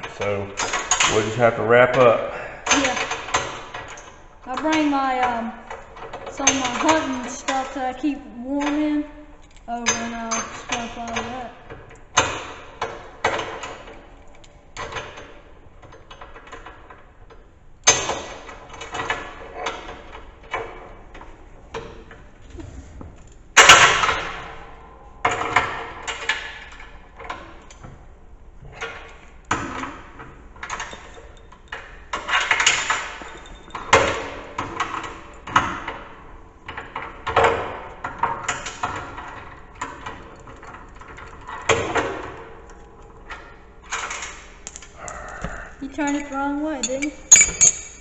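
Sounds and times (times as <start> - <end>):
metal tools clanking: 0.0 - 11.5, 45.8 - 48.0.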